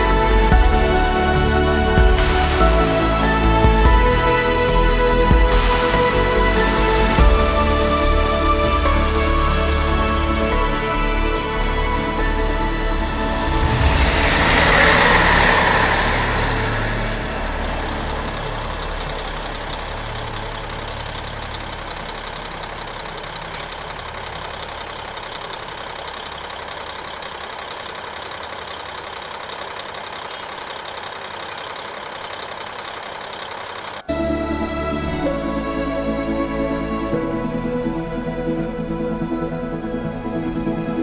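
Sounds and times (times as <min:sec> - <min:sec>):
background music: 0:00.0 - 0:25.2, 0:34.1 - 0:41.0
passing train rumble: 0:00.0 - 0:41.0.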